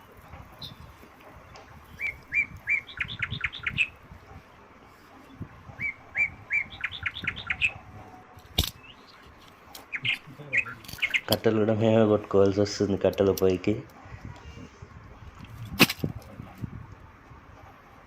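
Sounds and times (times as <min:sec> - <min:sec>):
songbird singing: 0:00.0 - 0:13.1
sharp click: 0:08.4 - 0:08.8.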